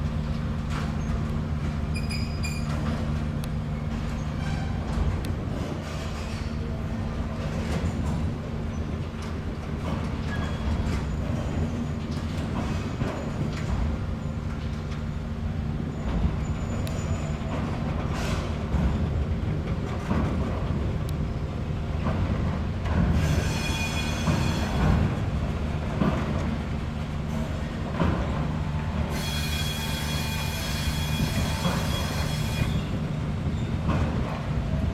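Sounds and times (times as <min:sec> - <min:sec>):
locomotive engine droning: 0:00.0 - 0:34.9
train wheels squealing: 0:01.8 - 0:03.1, 0:04.1 - 0:04.9, 0:10.2 - 0:19.1, 0:23.1 - 0:25.3, 0:28.2 - 0:33.9.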